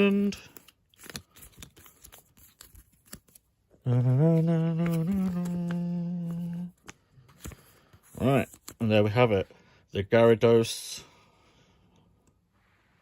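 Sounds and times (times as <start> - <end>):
cards being handled: 0.0 - 3.6, 4.3 - 9.0
man humming: 3.8 - 6.8.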